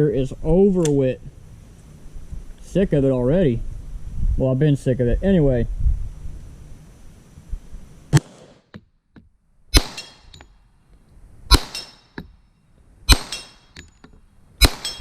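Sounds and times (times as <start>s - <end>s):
pistol shots: 8.1s - 8.7s, 9.7s - 10.4s, 11.5s - 12.2s, 13.1s - 13.7s, 14.6s - 15.0s
steel target ringing: 9.8s - 10.6s, 11.5s - 12.2s, 13.1s - 14.0s, 14.6s - 15.0s
light metallic clinks: 13.3s - 15.0s.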